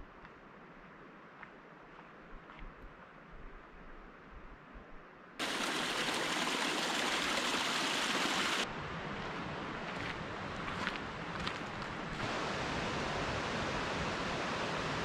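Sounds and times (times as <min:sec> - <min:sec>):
faint outdoor noise: 0:00.0 - 0:15.0
stream water rushing: 0:05.4 - 0:08.7, 0:12.2 - 0:15.0.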